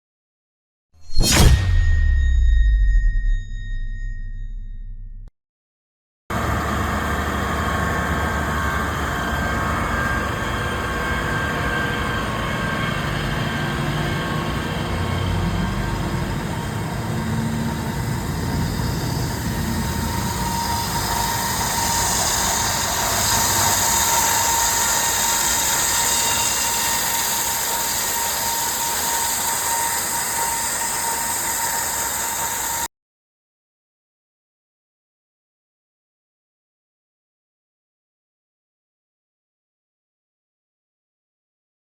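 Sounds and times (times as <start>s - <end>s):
wire saw cutting concrete: 19.4s - 32.9s.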